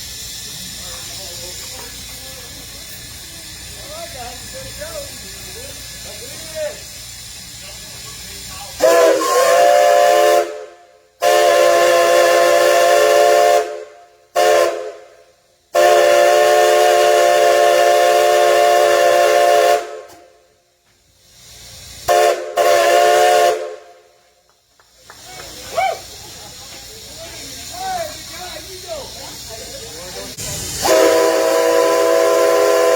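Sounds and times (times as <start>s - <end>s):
steam locomotive chime whistle: 8.8s - 15.1s, 15.7s - 20.2s, 22.1s - 23.9s, 30.8s - 32.9s.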